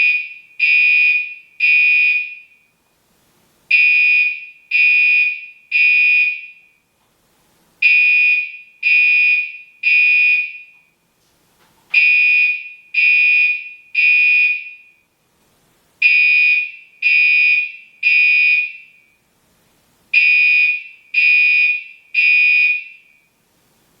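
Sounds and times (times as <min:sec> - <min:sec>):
fire alarm horn blasts: 0:00.0 - 0:02.7, 0:03.7 - 0:06.8, 0:07.8 - 0:10.8, 0:12.0 - 0:15.0, 0:16.0 - 0:19.2, 0:20.1 - 0:23.3.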